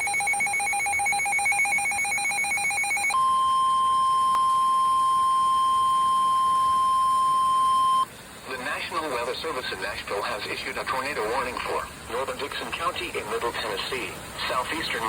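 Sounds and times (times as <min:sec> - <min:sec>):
pulsing two-pitch electronic alarm: 0:00.0 - 0:08.0
steady alarm tone: 0:00.0 - 0:08.1.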